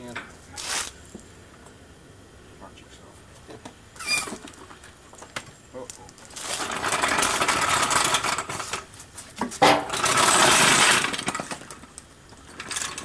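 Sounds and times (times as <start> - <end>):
short squeak: 4.0 - 4.4
car frame rattling and scraping: 6.4 - 11.8.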